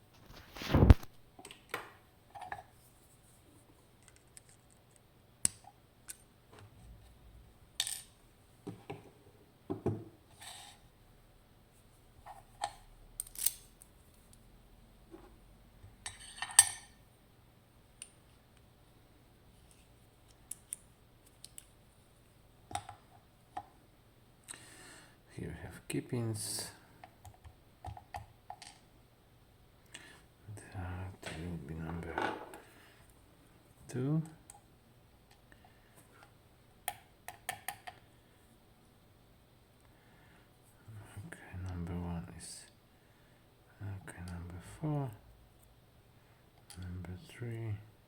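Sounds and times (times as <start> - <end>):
lock parts clicking and clinking: 12.6 - 13.9.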